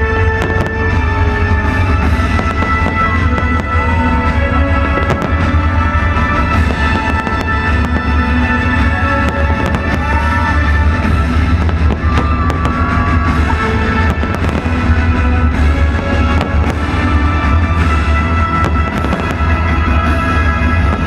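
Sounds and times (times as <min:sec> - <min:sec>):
fireworks bangs and crackles: 0:00.0 - 0:21.0
loud music with heavy bass: 0:00.0 - 0:21.0.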